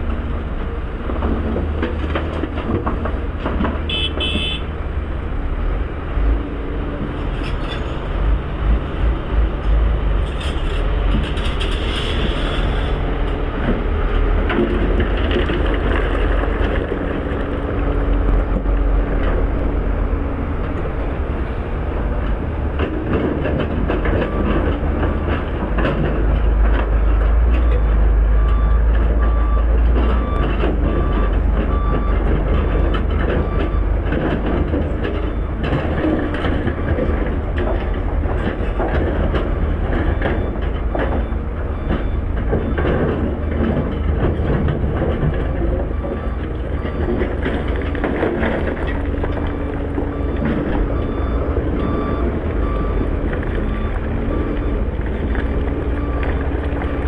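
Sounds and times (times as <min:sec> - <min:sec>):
diesel machinery engines rumbling: 0:00.0 - 0:57.0
reversing alarm beeps: 0:24.1 - 0:25.4, 0:27.6 - 0:37.4, 0:38.8 - 0:57.0.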